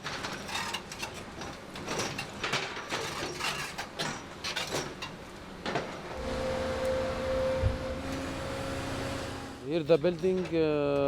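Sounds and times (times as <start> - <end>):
steady hum: 6.2 - 9.7.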